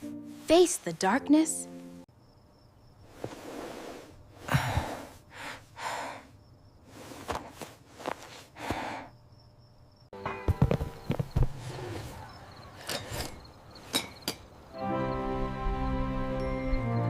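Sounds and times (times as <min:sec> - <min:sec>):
breathy hissing puffs: 0:03.0 - 0:09.2.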